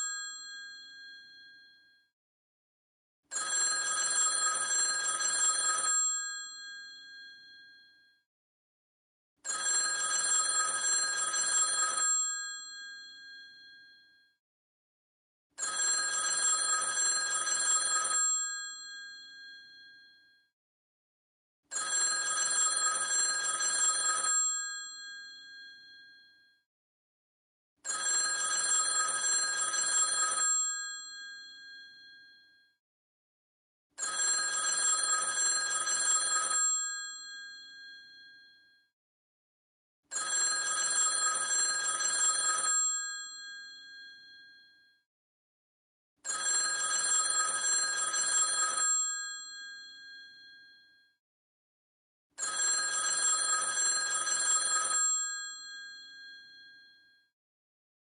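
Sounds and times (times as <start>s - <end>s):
telephone mechanical bell ringing: 3.3s - 6.2s, 9.5s - 12.8s, 15.6s - 19.5s, 21.7s - 26.0s, 27.9s - 32.2s, 34.0s - 38.2s, 40.1s - 44.4s, 46.3s - 50.5s, 52.4s - 56.6s.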